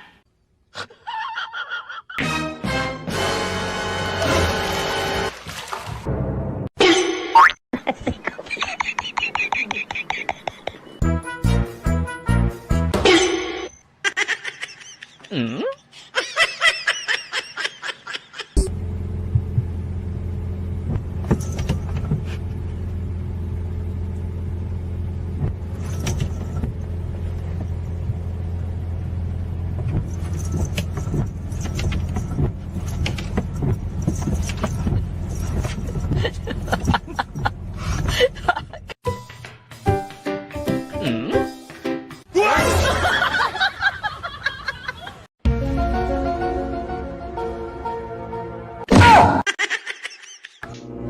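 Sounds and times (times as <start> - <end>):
low droning hum: 18.7 - 37.9.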